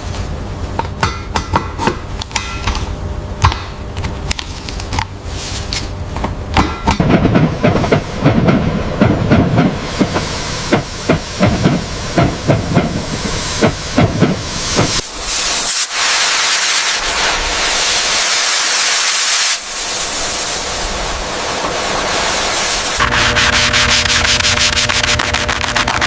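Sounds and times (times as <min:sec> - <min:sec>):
loud steady hiss: 0:07.8 - 0:26.0
sanding of metal: 0:22.8 - 0:26.0.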